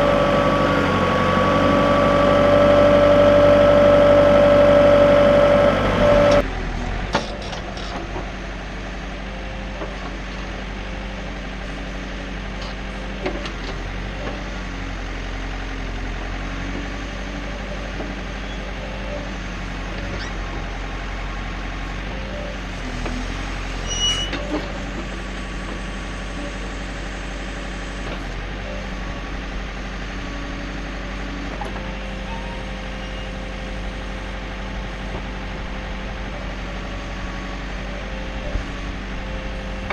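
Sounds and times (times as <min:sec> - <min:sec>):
diesel engine running: 0:00.0 - 0:39.9
brief squeal: 0:23.8 - 0:24.6, 0:32.0 - 0:33.4.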